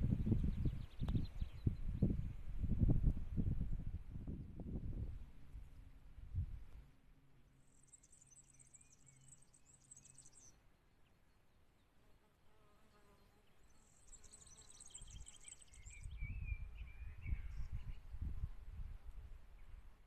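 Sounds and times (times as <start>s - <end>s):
bird chirps: 7.6s - 10.6s, 13.0s - 18.1s.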